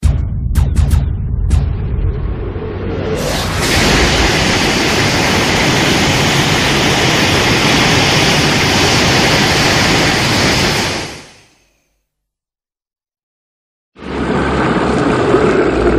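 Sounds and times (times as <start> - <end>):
rushing blast of noise: 1.2 - 11.7, 14.0 - 15.9.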